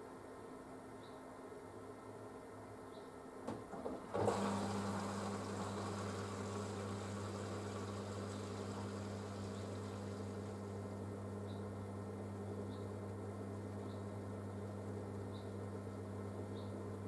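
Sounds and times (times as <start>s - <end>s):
washing machine electric hum: 2.1s - 17.0s.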